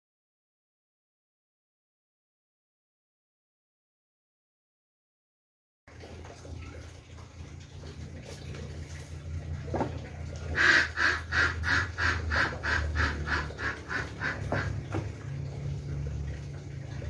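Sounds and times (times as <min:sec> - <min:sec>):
steady low hum: 0:07.0 - 0:17.0
animal calling in short bursts: 0:10.6 - 0:14.7.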